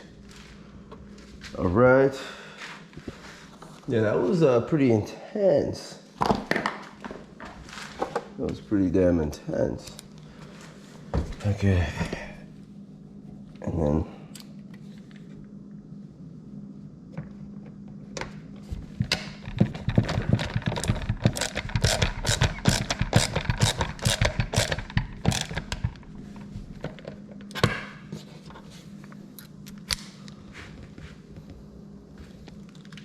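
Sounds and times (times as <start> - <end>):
steady low hum: 0.0 - 33.0
plastic parts clicking and knocking: 19.1 - 26.0.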